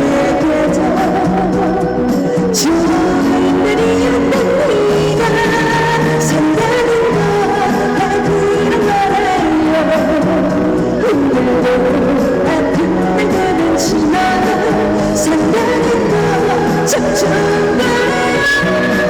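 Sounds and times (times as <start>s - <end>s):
instrumental accompaniment: 0.0s - 19.0s
woman singing with vibrato: 0.0s - 19.0s.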